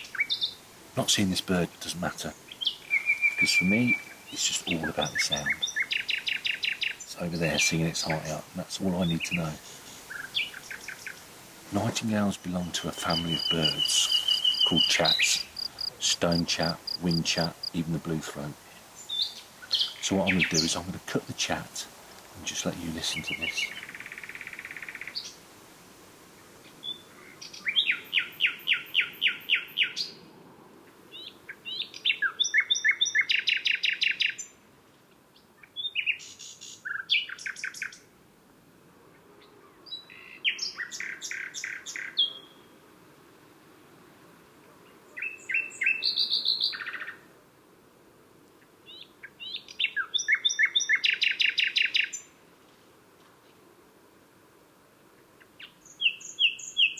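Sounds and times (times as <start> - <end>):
nightingale singing: 0.0 - 25.4, 26.7 - 30.2, 31.1 - 34.6, 39.9 - 42.7, 45.0 - 47.2, 48.9 - 52.4, 55.4 - 56.9.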